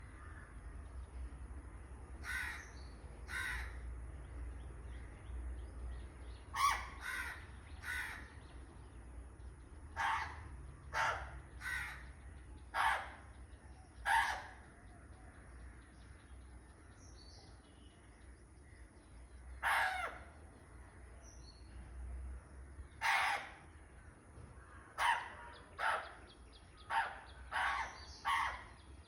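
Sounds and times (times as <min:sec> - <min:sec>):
parrot cawing like a crow: 0:02.2 - 0:02.7, 0:03.3 - 0:03.8, 0:06.6 - 0:08.3, 0:10.0 - 0:12.1, 0:12.7 - 0:13.2, 0:14.0 - 0:14.6, 0:19.6 - 0:20.3, 0:23.0 - 0:23.6, 0:26.9 - 0:28.7.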